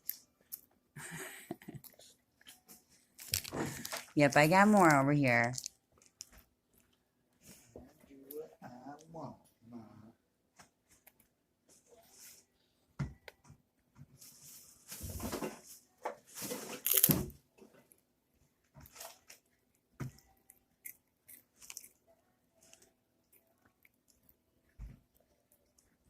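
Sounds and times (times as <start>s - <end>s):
wafers crunched and chewed: 3.2s - 4.0s, 16.8s - 17.3s, 20.2s - 24.4s.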